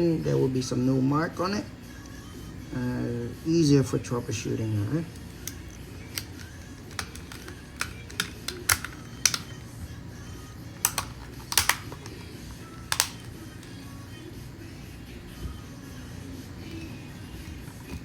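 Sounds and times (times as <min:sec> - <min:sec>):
faint background music: 0:00.0 - 0:18.0
plastic parts clicking and tapping: 0:05.2 - 0:09.6, 0:10.8 - 0:13.7.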